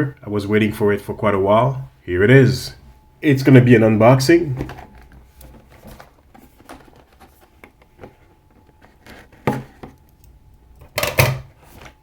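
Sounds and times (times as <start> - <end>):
packaging rustling: 4.5 - 10.0.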